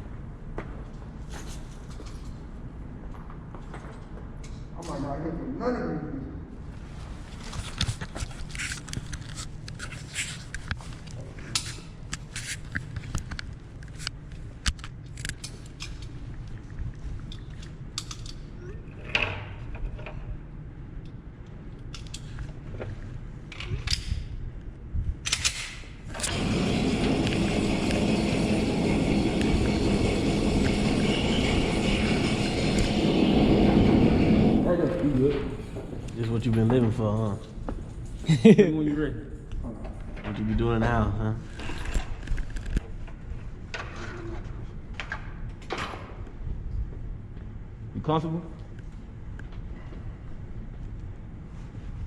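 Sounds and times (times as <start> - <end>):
loud steady rushing noise: 26.2 - 36.0.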